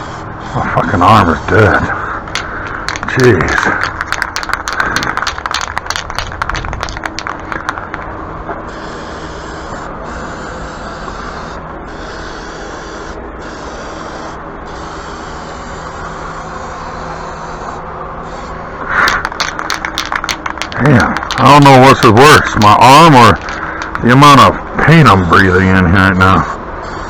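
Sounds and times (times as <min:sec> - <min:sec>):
fan humming: 0:00.0 - 0:27.0
spray can rattling clicks: 0:02.3 - 0:08.1, 0:19.0 - 0:24.1.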